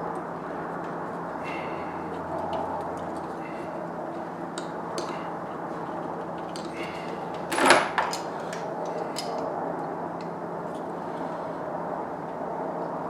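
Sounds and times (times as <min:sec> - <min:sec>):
clicks and knocks of parts handled: 0:02.1 - 0:09.5.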